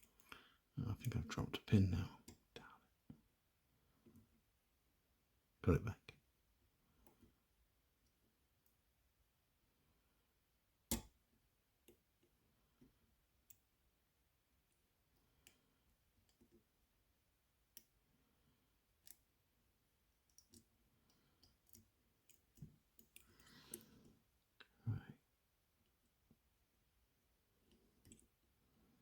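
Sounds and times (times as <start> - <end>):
lock pick clicking and tapping: 10.9 - 11.2, 20.3 - 20.7.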